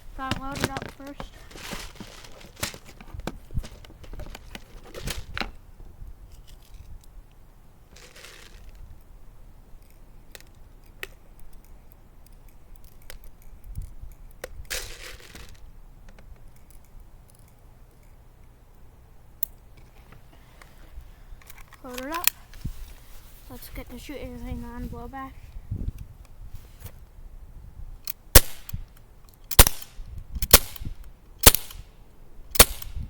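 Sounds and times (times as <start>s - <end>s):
short rustling bursts: 0.0s - 5.4s, 19.9s - 27.0s
airsoft pistol loading clicks: 28.0s - 31.8s.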